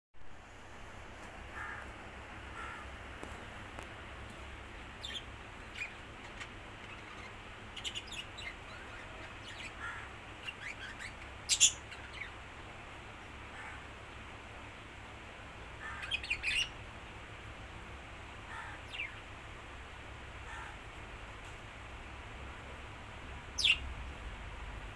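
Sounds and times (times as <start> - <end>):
small birds chirping: 1.6 - 15.0, 15.6 - 20.9, 23.1 - 24.2.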